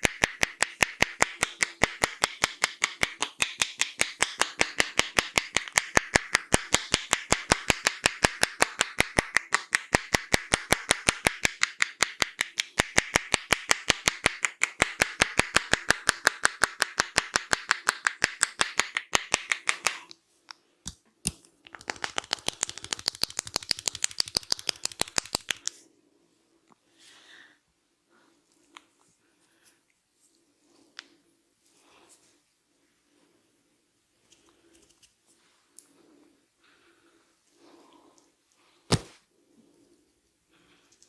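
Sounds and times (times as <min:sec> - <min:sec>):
hands snapping on head: 0:00.0 - 0:20.2, 0:20.9 - 0:25.8, 0:38.9 - 0:39.2.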